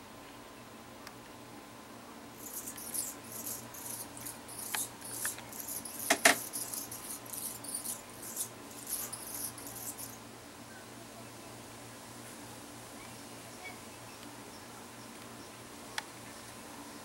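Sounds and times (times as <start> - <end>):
hummingbird chittering: 2.4 - 10.2.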